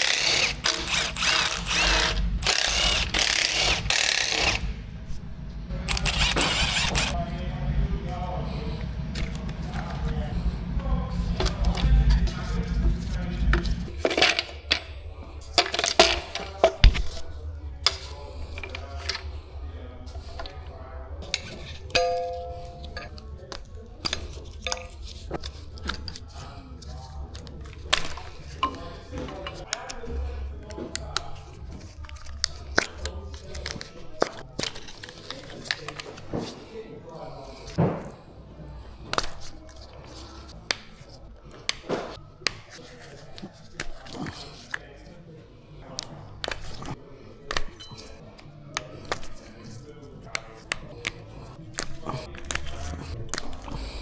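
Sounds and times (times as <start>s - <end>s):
hand tools and metal parts clicking: 0.0s - 4.7s, 5.9s - 7.2s, 11.3s - 19.3s, 21.2s - 30.0s, 45.9s - 48.2s
steady low hum: 0.0s - 29.6s
metal tools clinking: 5.9s - 7.2s, 11.3s - 19.3s, 21.2s - 23.4s.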